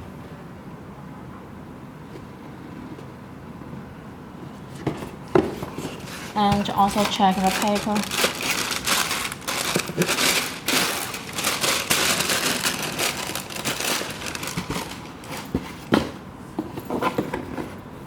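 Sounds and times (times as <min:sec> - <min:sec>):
paper rustling and crinkling: 0:04.8 - 0:16.2.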